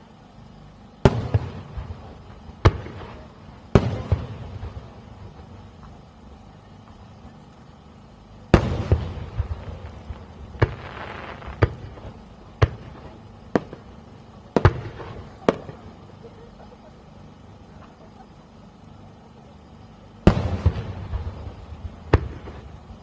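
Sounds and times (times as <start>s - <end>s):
sharp firework bangs: 1.0s - 5.7s, 8.5s - 16.0s, 20.2s - 23.0s
firework shells bursting: 8.5s - 16.2s.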